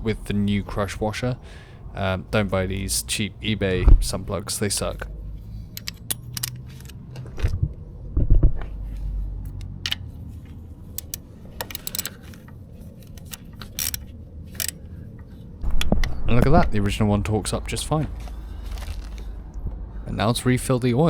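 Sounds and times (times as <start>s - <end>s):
low hum: 0.0s - 21.0s
metal hand tools clinking: 11.0s - 12.2s.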